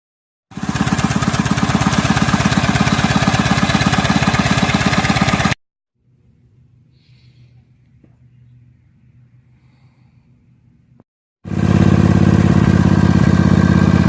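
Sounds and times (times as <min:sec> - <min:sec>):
small engine running: 0:00.5 - 0:05.6, 0:11.5 - 0:14.0.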